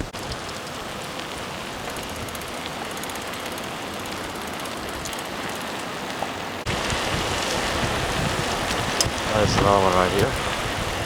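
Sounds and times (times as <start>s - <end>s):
car road and engine noise: 0.0s - 11.0s.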